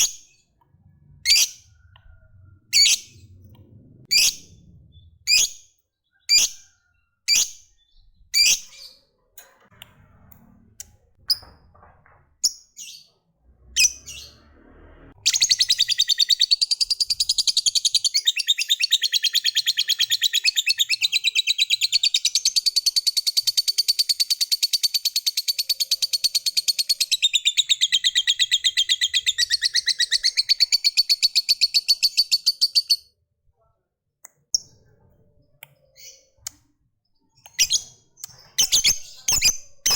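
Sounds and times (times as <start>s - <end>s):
lovebird chirping and trilling: 0.0s - 0.4s, 1.2s - 3.5s, 4.1s - 9.1s, 13.7s - 14.4s, 15.2s - 33.1s, 35.8s - 36.6s, 37.3s - 39.9s.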